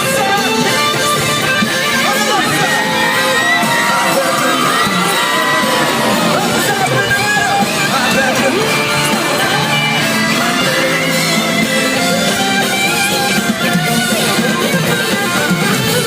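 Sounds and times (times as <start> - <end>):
guitar: 0.0 - 16.0
live band music: 0.0 - 16.0.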